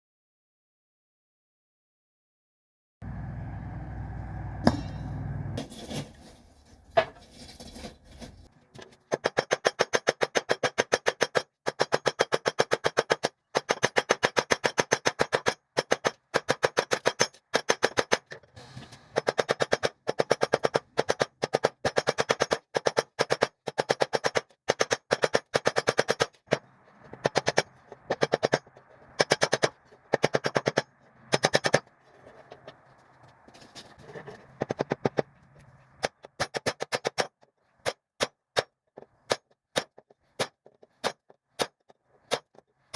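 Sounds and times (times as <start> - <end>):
steady low hum: 3.0 - 5.6
hammer blows on hot steel: 4.1 - 5.6.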